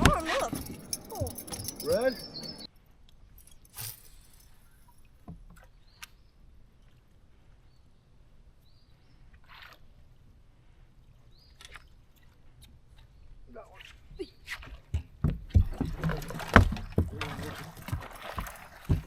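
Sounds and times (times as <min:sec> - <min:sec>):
knocks and ticks from gear: 0:14.8 - 0:19.0.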